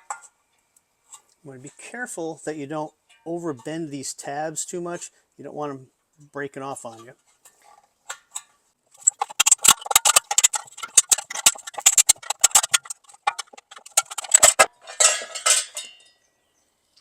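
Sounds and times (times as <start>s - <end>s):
metallic scraping rattle: 6.8s - 16.1s.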